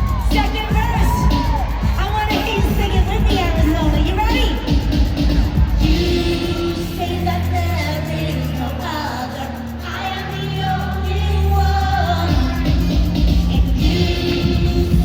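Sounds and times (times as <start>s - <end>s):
drumbeat: 0.0s - 6.9s, 12.3s - 15.0s
pop song with sung vocals: 0.0s - 15.0s
steady bass: 0.0s - 15.0s.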